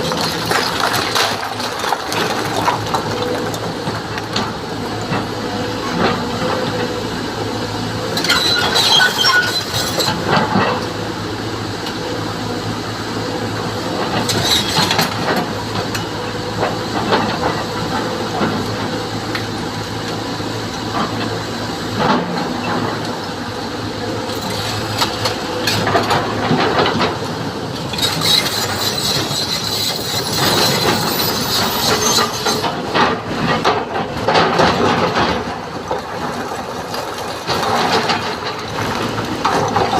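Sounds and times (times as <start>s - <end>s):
diesel engine running under load: 0.0s - 39.9s
steel clanking and grinding on rock: 8.2s - 10.8s, 14.2s - 15.5s, 24.3s - 27.2s, 27.8s - 35.5s.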